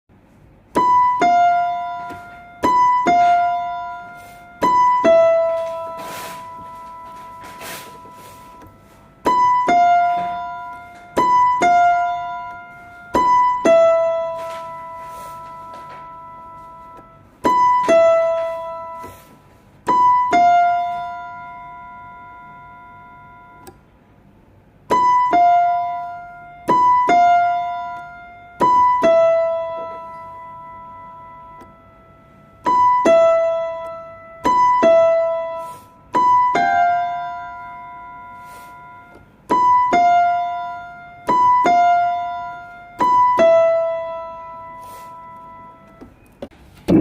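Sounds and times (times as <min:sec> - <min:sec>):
electronic keyboard playing scary melody: 0:00.8 - 0:19.3, 0:24.9 - 0:46.2.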